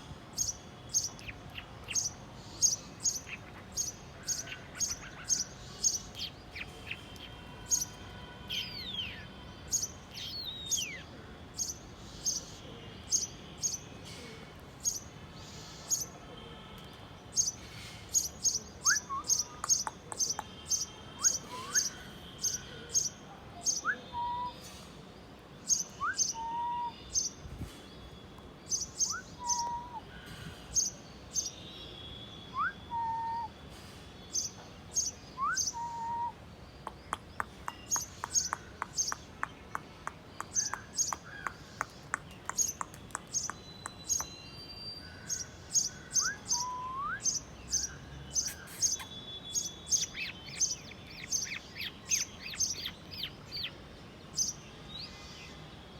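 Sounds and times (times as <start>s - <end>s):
sparrows chirping: 0.0s - 14.2s, 14.8s - 16.2s, 16.8s - 55.9s
quick evenly spaced ticks: 36.9s - 44.3s.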